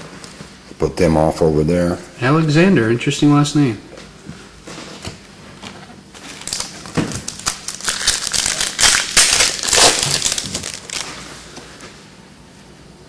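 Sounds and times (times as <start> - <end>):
foil wrapper crinkling: 6.1 - 11.4.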